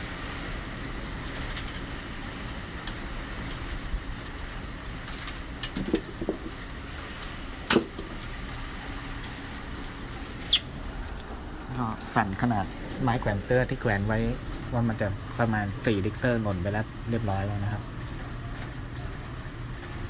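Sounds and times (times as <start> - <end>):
strong wind around building: 0.0 - 17.1
knocks: 5.8 - 6.6.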